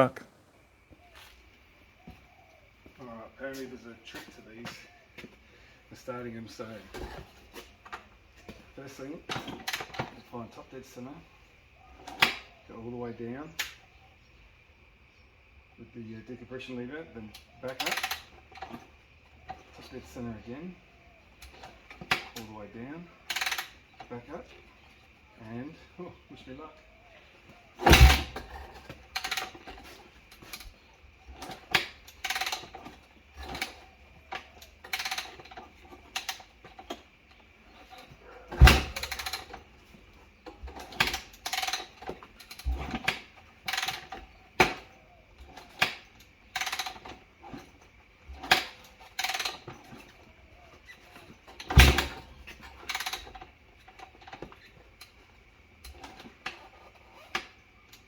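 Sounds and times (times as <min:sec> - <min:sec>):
motorcycle engine kick start thuds: 0:27.8 - 0:33.8, 0:37.8 - 0:39.6, 0:40.6 - 0:45.0, 0:51.0 - 0:53.4.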